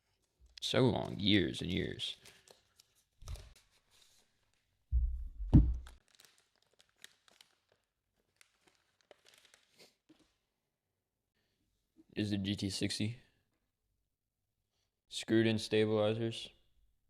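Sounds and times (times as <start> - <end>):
sharp knock: 5.0 - 5.8
dull thump: 5.0 - 5.9.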